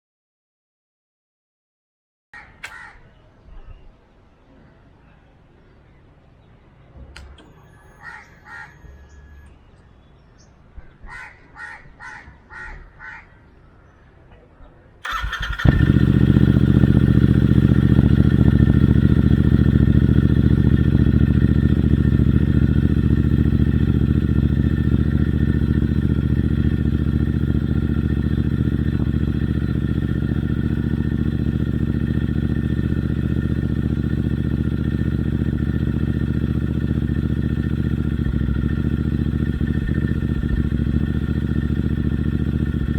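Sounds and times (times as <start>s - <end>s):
motorcycle engine idling: 15.0s - 42.9s
starter cranking: 15.1s - 16.2s.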